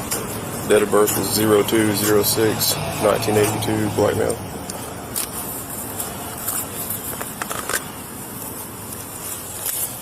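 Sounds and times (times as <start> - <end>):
clicks and clothing rustles: 4.7 - 8.6.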